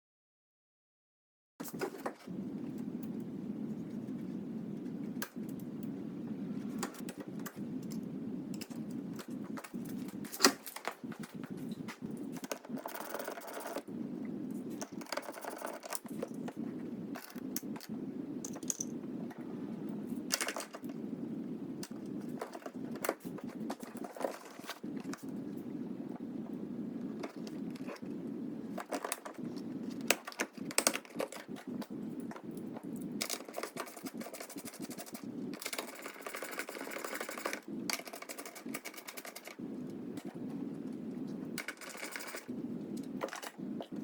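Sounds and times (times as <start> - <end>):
steady low hum: 1.6 - 44.0.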